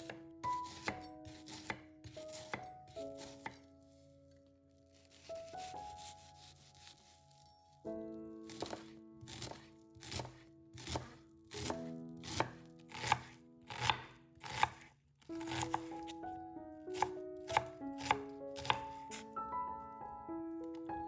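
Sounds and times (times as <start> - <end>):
knife chopping on cutting board: 0.0 - 3.6, 5.1 - 7.1, 8.5 - 16.2, 17.0 - 19.3
background music: 0.0 - 21.0.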